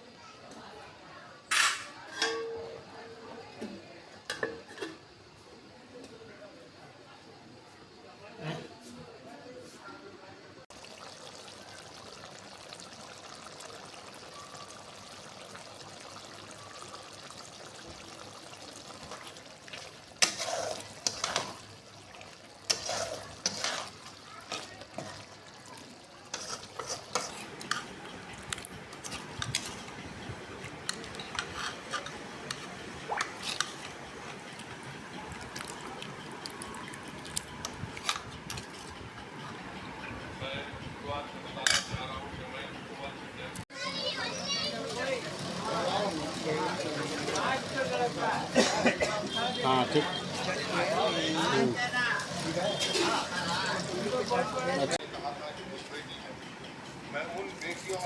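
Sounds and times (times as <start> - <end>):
liver frying with hiss: 10.6 - 39.8, 43.7 - 55.0
utensil scraping in pan: 19.7 - 21.8, 22.6 - 25.3, 26.2 - 30.0, 30.8 - 34.4, 44.8 - 55.0.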